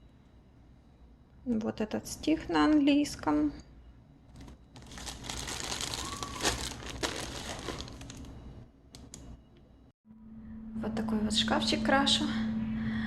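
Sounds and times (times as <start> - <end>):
plastic bag crinkling: 4.3 - 8.4.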